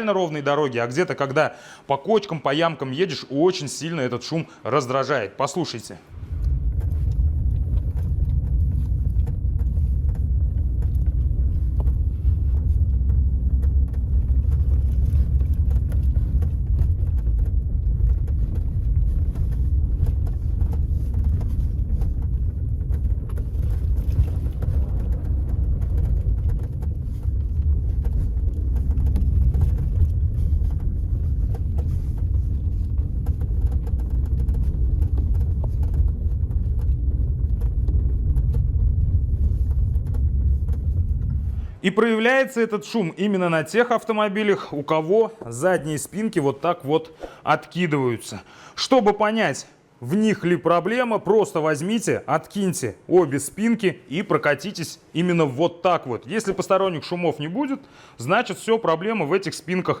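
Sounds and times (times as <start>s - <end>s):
low road rumble: 6.1s - 41.9s.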